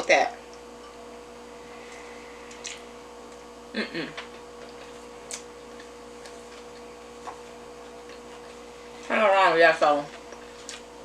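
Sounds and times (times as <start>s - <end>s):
electrical hum: 0.0s - 11.0s
person humming: 3.7s - 4.3s.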